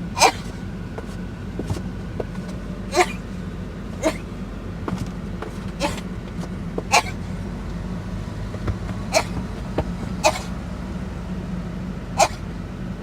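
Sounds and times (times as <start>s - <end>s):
lamb coughing: 0.0s - 0.6s, 2.8s - 3.4s, 4.0s - 4.4s, 5.6s - 6.2s, 6.8s - 7.4s, 9.0s - 10.6s, 12.2s - 12.6s
steady low hum: 0.0s - 13.0s.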